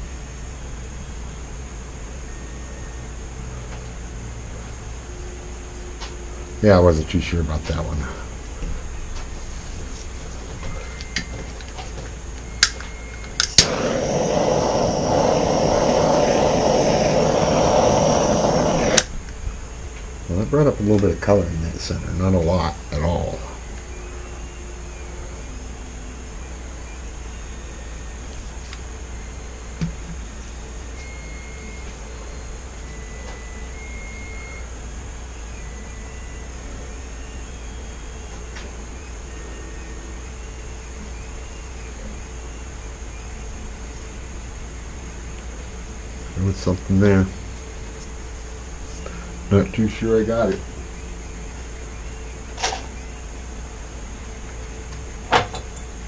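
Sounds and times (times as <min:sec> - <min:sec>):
low electrical hum: 0:00.0 - 0:56.0
faint thin whistling tones: 0:02.0 - 0:04.0, 0:08.0 - 0:56.0
air tool blowing rush: 0:13.4 - 0:19.3.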